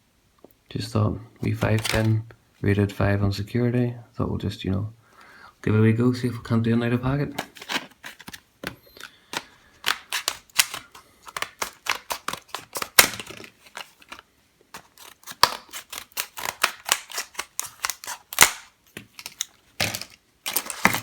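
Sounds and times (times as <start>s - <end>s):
plastic packet tearing: 1.4s - 2.2s, 7.2s - 21.0s.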